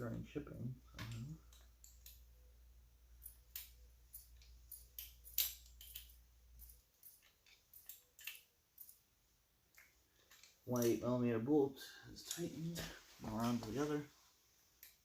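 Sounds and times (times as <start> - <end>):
small metal parts clicking: 1.0 - 2.3, 3.2 - 9.0, 9.7 - 11.0.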